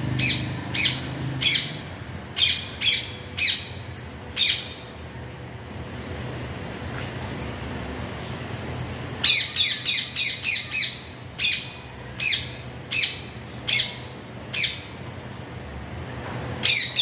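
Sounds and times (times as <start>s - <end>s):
parrot squawking: 0.2s - 1.8s.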